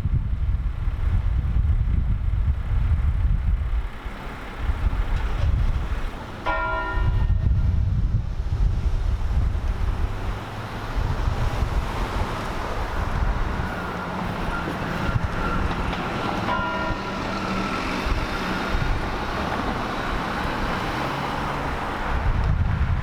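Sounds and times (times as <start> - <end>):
traffic rumble: 0.0 - 23.0
wind rumble: 0.0 - 23.0
church bell tolling: 6.4 - 7.4, 16.4 - 17.9.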